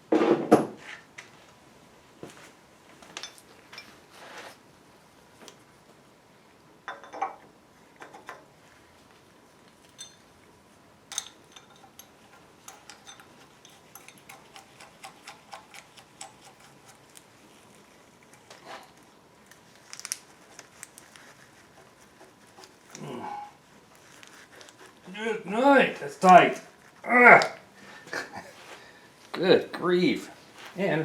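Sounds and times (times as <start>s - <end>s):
metal tools tapping on engine: 9.9s - 10.2s, 11.1s - 14.7s.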